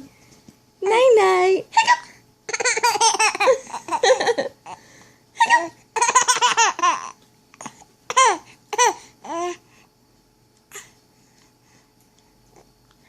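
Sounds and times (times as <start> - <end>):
baby giggling: 1.8 - 4.8, 5.4 - 7.2.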